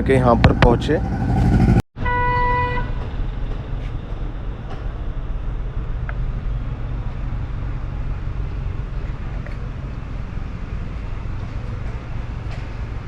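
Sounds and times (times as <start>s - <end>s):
car engine rumbling: 0.0s - 1.8s.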